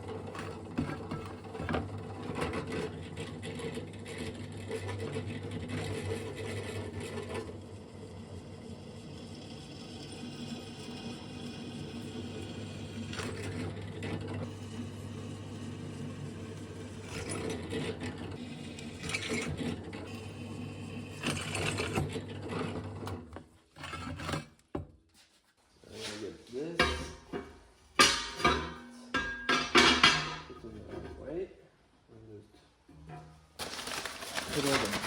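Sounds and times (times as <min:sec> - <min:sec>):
metal tools clinking and scraping: 0:26.8 - 0:30.8.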